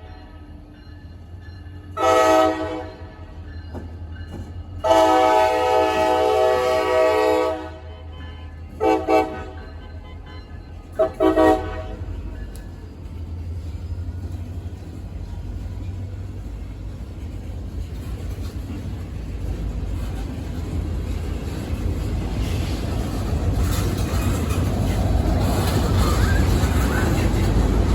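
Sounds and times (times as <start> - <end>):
low rumble of train: 0.0 - 27.9
car horn: 2.0 - 2.9, 4.8 - 10.4, 11.0 - 12.1
train horn: 2.0 - 3.1, 4.8 - 12.2.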